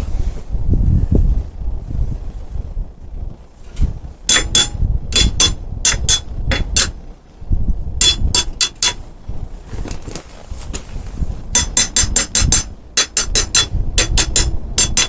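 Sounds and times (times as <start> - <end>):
metal clinking against metal: 4.3 - 7.0, 8.0 - 9.0, 11.5 - 15.0.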